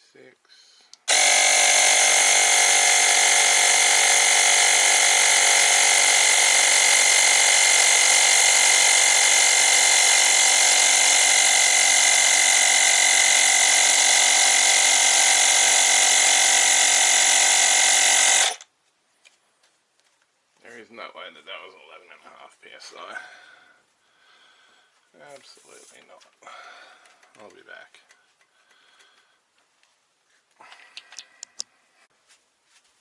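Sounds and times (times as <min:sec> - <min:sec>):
tyre compressor whining: 0:00.9 - 0:18.7.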